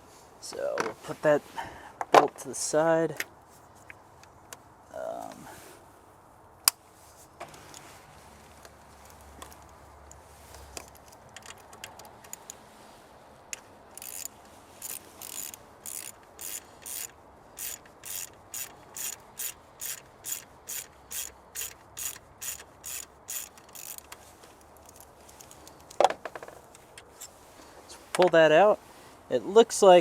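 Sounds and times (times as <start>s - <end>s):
socket ratchet clicking: 13.9s - 26.0s.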